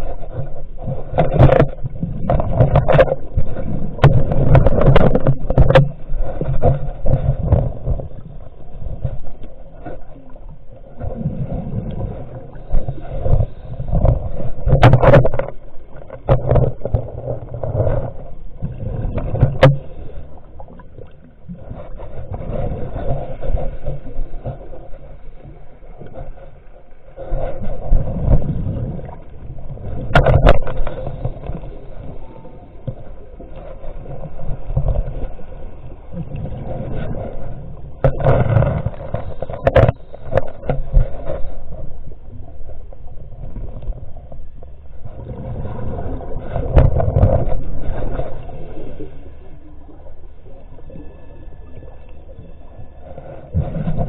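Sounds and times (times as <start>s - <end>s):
muffled water sloshing: 0.0s - 54.0s.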